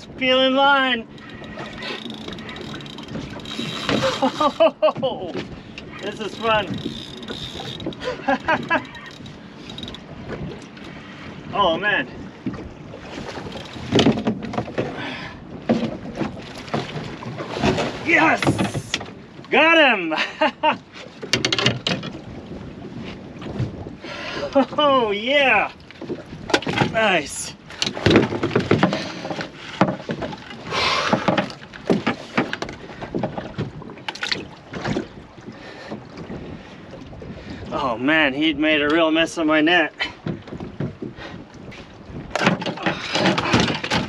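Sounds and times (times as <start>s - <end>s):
knocks and clatter inside boat: 1.0s - 11.0s, 12.4s - 15.0s, 15.6s - 19.5s, 21.0s - 23.9s, 25.9s - 36.6s, 40.0s - 44.0s
wind on microphone: 1.0s - 14.7s, 21.8s - 24.6s, 32.6s - 38.6s, 40.2s - 44.0s.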